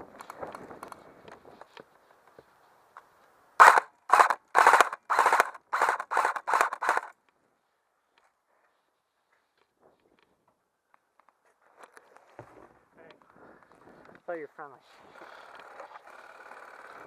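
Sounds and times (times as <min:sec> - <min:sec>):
airsoft rifle firing bursts: 0:03.6 - 0:07.1.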